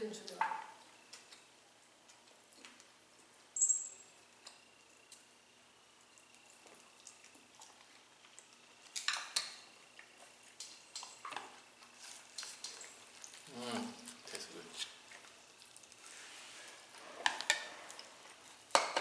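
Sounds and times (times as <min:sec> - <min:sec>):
dishes clattering: 0:18.7 - 0:19.0.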